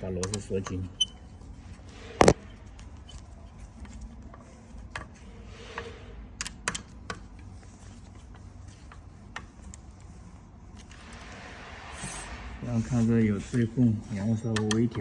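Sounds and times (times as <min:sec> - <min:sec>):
metal parts clicking and tapping: 0:00.0 - 0:01.1.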